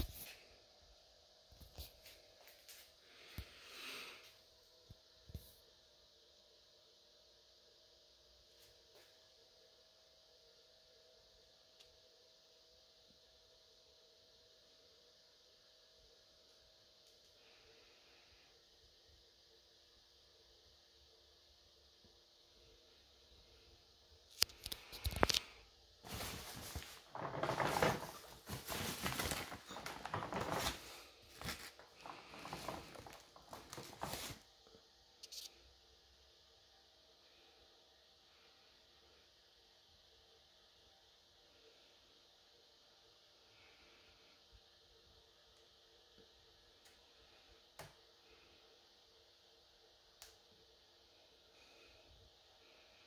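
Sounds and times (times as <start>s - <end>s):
packaging rustling and scraping: 26.0s - 34.4s.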